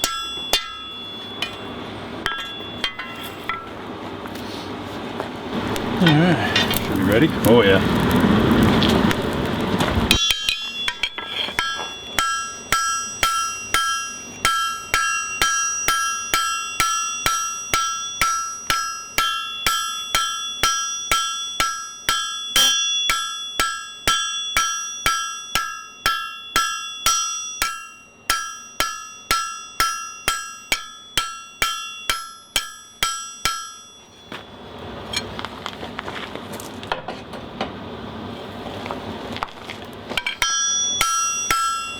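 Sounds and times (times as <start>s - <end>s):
hammer ringing on anvil: 0.0s - 3.8s, 10.1s - 35.3s, 40.2s - 41.9s
steady rushing noise: 4.9s - 10.2s.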